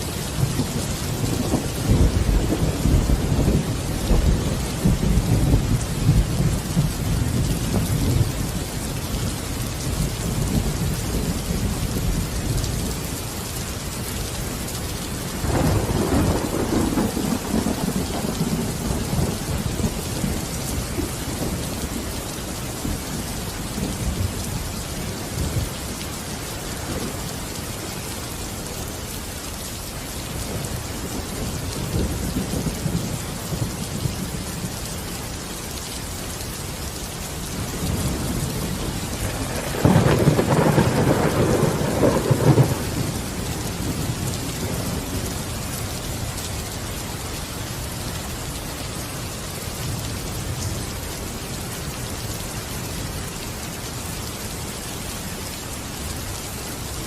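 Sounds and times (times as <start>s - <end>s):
steady rain: 0.0s - 57.0s
rolling thunder: 0.4s - 8.6s, 15.4s - 22.0s, 37.6s - 45.3s.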